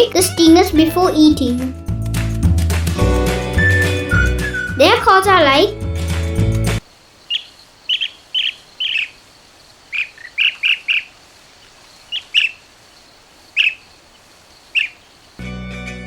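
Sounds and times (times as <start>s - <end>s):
bird chirping: 7.0s - 15.4s.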